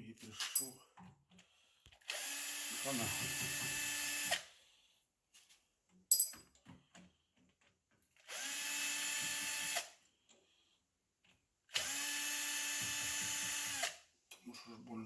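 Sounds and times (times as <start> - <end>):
power drill spinning up: 2.0 - 4.4, 8.2 - 9.9, 11.7 - 14.0.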